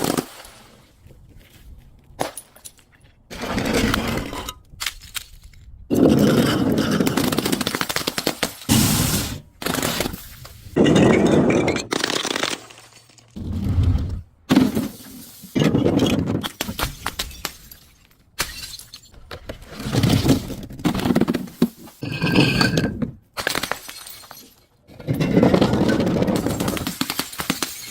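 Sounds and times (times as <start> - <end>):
glass bottles shattering: 16.9 - 19.1, 22.0 - 25.2.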